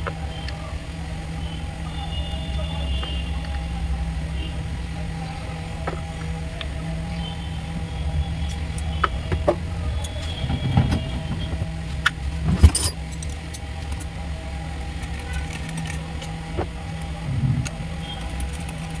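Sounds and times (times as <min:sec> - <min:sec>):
steady low hum: 0:00.0 - 0:19.0
metal tools clinking and knocking: 0:08.7 - 0:14.1.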